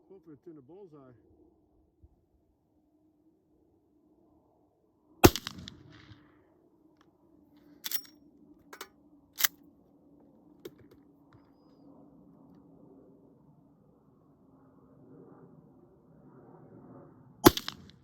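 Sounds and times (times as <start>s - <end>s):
rifle shot: 5.2s - 6.2s, 17.4s - 18.0s.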